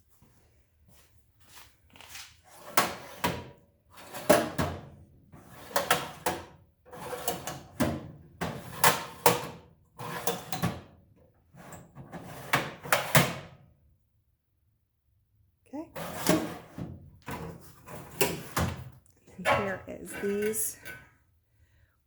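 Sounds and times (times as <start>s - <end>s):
metal drawers sliding: 2.5s - 10.8s, 11.6s - 13.3s, 16.0s - 18.8s.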